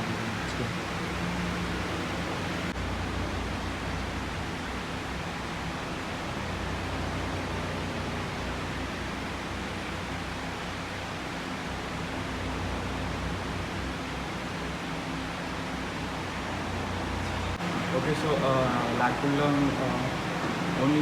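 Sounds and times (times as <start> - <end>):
fan running: 0.0 - 21.0.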